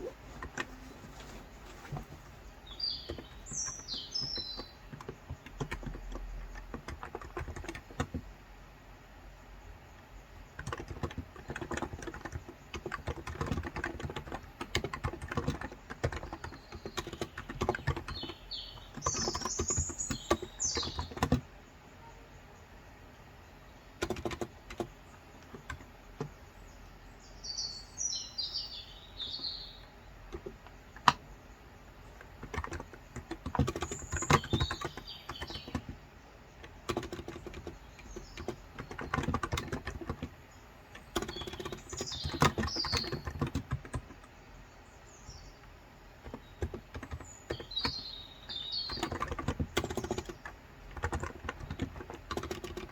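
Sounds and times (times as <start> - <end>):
keyboard typing soft clacks: 0.0 - 8.3, 10.5 - 21.5, 24.0 - 26.4, 32.0 - 44.4, 46.2 - 52.9
small birds chirping: 0.0 - 52.9.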